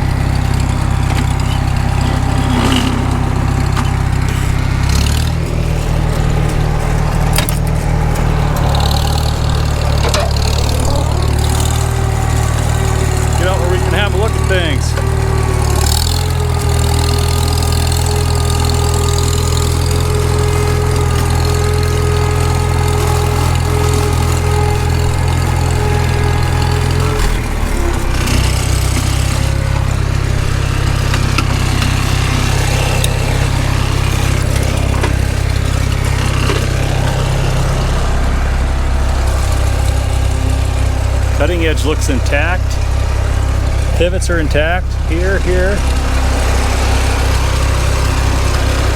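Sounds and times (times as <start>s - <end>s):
tractor engine running: 0.0s - 48.9s.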